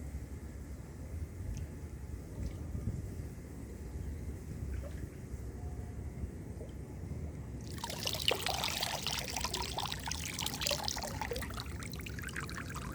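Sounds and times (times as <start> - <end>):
water pouring and splashing: 7.6 - 12.9.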